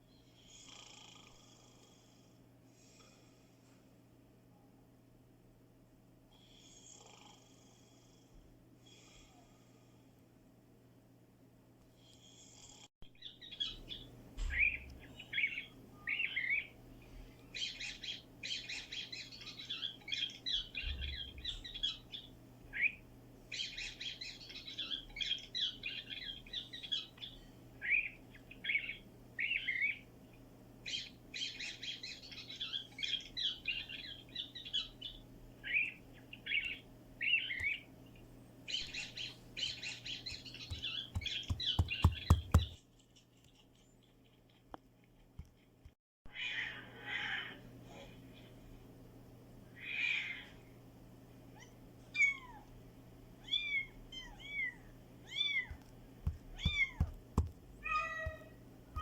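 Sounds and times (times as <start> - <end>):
small animal chirps and squeaks: 38.7 - 42.8, 53.4 - 59.0.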